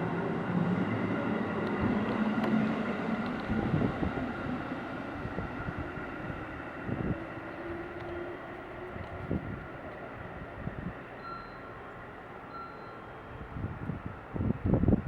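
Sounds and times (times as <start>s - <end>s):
train rumbling on rails: 0.0s - 15.0s
train clunks: 1.2s - 5.6s.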